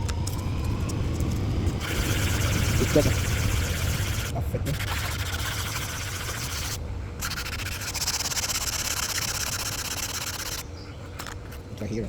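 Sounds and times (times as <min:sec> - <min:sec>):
sandpaper rasping back and forth: 0:01.8 - 0:10.6.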